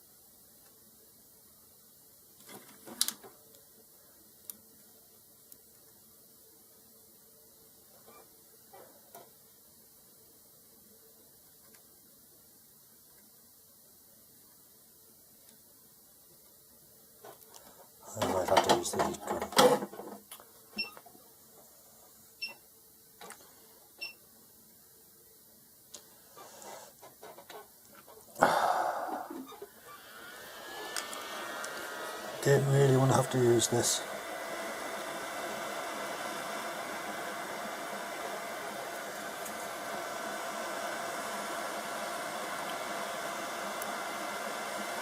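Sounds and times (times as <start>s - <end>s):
heat gun blowing: 28.4s - 45.0s.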